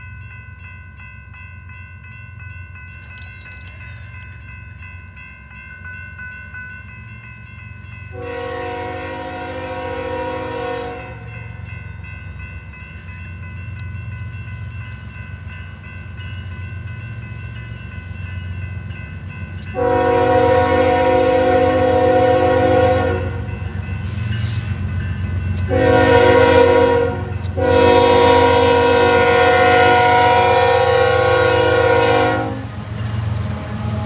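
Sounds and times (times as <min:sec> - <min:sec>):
train horn blast: 0:08.1 - 0:11.2, 0:19.7 - 0:23.5, 0:25.6 - 0:32.8
locomotive rumbling: 0:08.1 - 0:34.0.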